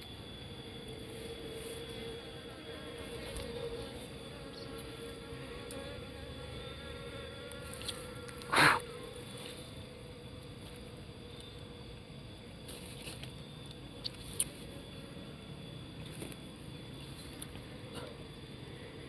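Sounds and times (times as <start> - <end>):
bees buzzing: 2.0 - 10.5.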